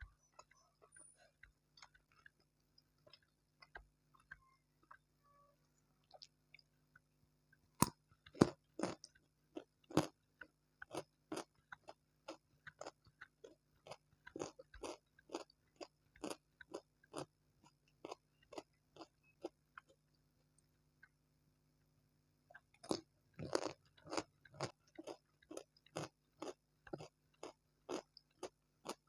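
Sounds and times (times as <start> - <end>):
crunchy chewing: 0.1 - 5.0, 7.8 - 20.1, 22.5 - 29.0.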